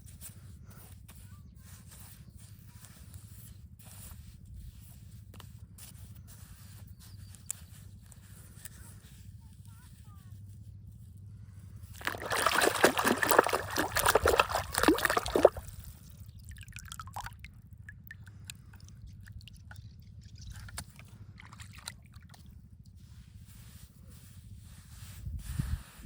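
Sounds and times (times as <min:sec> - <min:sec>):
water sloshing and splashing: 0:11.9 - 0:22.5
small drips and clicks: 0:12.0 - 0:22.5.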